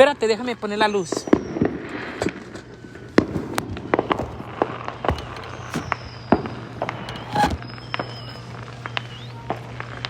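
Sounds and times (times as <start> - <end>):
fireworks bangs and pops: 1.1 - 10.0.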